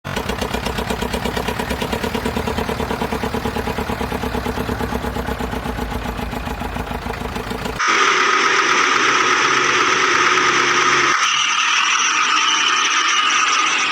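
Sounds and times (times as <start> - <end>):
vehicle engine throbbing: 0.0 - 13.4
high-pitched mechanical hum: 6.4 - 13.9.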